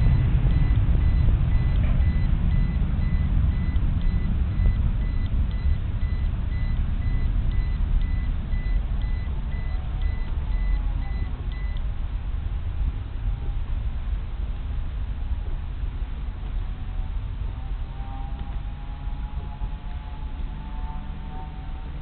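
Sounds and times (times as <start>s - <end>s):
reversing alarm beeping: 0.0s - 11.8s
background traffic rumble: 0.0s - 22.0s.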